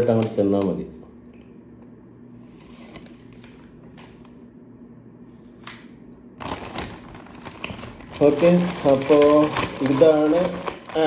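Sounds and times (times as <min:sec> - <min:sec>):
low room hum: 0:00.0 - 0:11.0
paper rustling: 0:02.4 - 0:04.5, 0:06.4 - 0:11.0.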